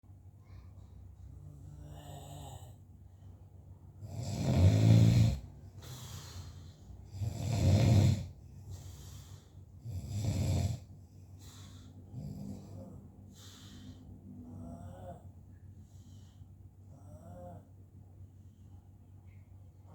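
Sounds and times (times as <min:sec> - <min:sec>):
man snoring: 0:01.6 - 0:02.8, 0:04.0 - 0:06.1, 0:07.0 - 0:08.4, 0:09.8 - 0:10.9, 0:12.1 - 0:13.0.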